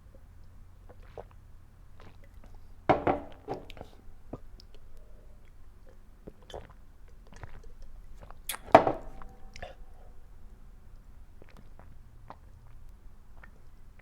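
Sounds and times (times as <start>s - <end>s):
wet mouth clicks: 5.4s - 8.7s.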